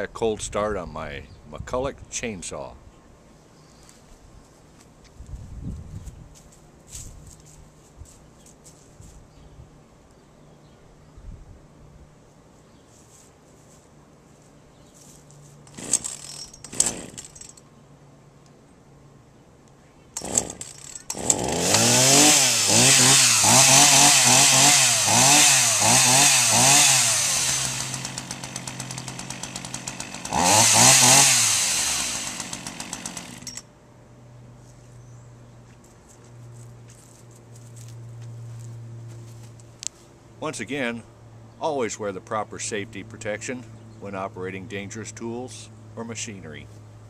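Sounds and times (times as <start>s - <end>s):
chainsaw pull-starter: 15.6s - 17.6s, 20.2s - 33.7s
chainsaw engine revving and idling: 15.7s - 17.4s, 20.2s - 33.6s.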